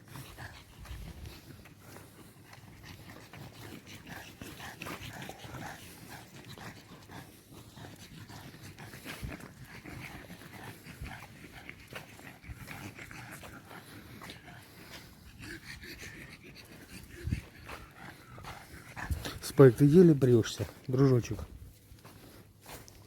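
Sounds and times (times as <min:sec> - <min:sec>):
dog panting: 0:00.0 - 0:23.0.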